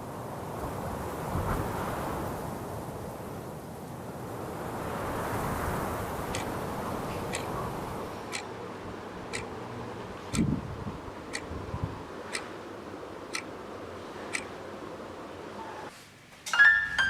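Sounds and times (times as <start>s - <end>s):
clock ticking: 7.3s - 7.5s, 8.3s - 8.5s, 9.3s - 9.5s, 10.3s - 10.6s, 11.3s - 11.5s, 12.3s - 12.5s, 13.3s - 13.6s, 14.3s - 14.6s.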